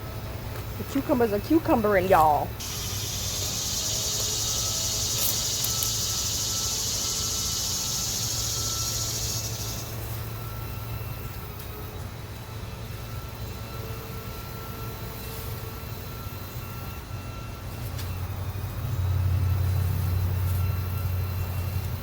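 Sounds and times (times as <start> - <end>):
insect buzzing: 2.6 - 11.2.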